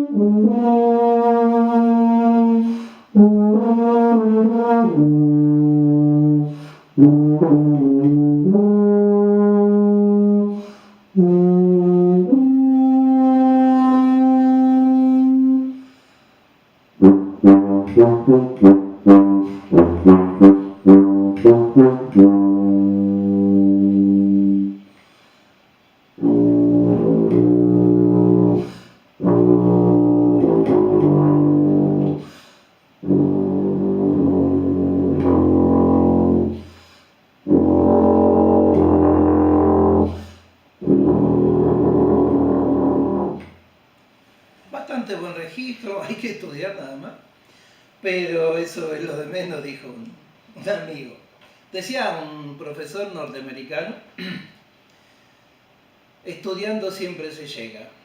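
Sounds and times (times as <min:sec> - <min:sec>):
tuba playing: 0:00.0 - 0:15.9, 0:16.9 - 0:24.9, 0:26.1 - 0:43.6.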